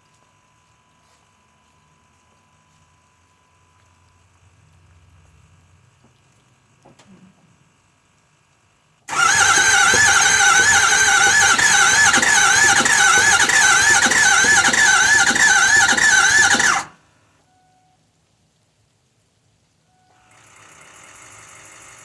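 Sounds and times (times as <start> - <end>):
diesel engine starter cranking: 9.1 - 17.0.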